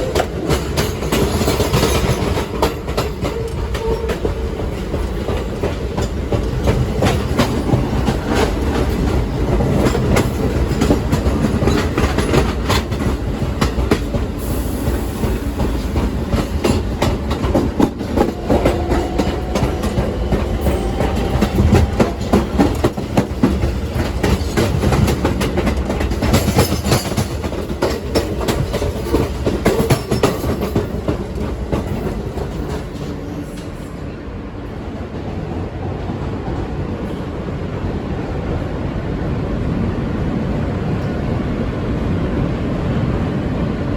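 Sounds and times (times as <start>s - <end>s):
wheels clicking over rail joints: 0.0s - 33.8s
subway train wheels rumbling: 0.0s - 43.9s.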